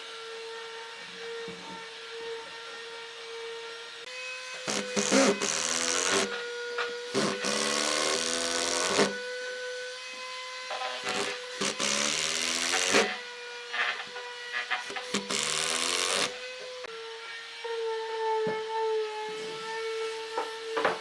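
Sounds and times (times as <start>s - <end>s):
power tool cutting wood: 0.0s - 21.0s.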